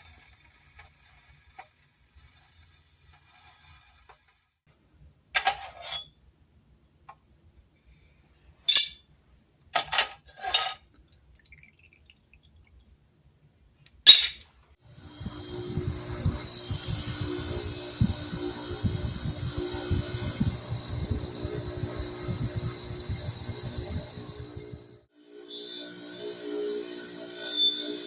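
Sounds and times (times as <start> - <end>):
metal tool parts clinking: 8.7 - 9.0, 9.8 - 10.8, 14.1 - 14.4
whirring with low hum: 14.8 - 28.0.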